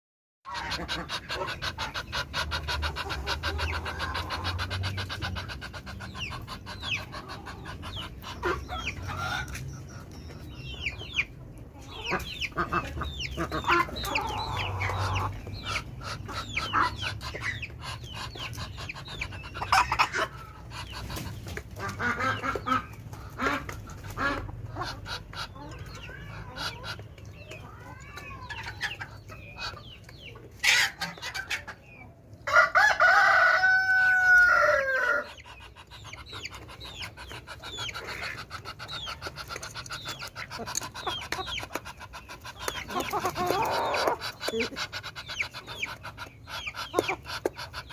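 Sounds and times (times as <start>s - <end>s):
chickens clucking: 0.5s - 47.9s
rooster crowing: 32.5s - 35.3s.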